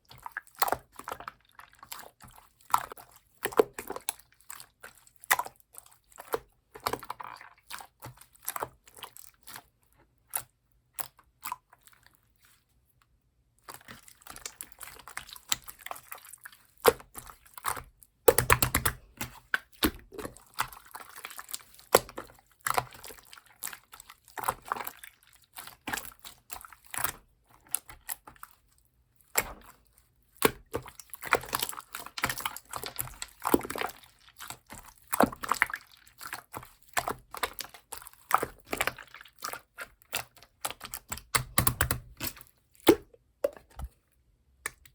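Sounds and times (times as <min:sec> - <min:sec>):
slime squishing sticky clicks: 0:40.2 - 0:43.9.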